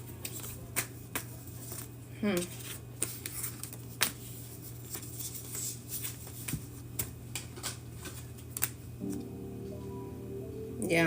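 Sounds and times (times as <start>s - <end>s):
cards being shuffled: 0.2s - 8.8s
steady low hum: 4.2s - 11.0s.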